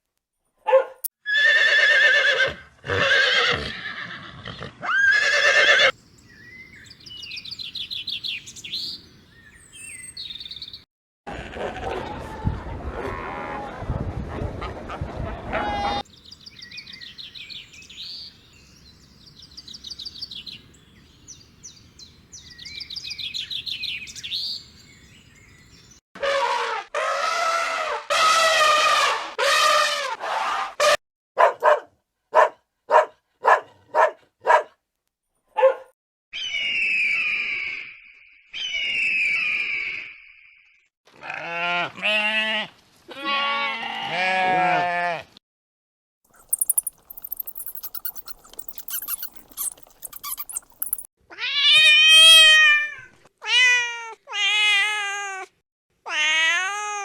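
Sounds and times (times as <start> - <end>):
high bird-like twittering: 46.3 - 51.1
falling animal calls: 46.4 - 51.1.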